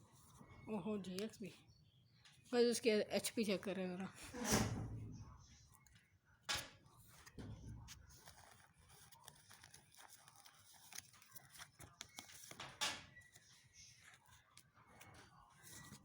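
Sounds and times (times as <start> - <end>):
trading cards rustling: 7.2 - 16.0.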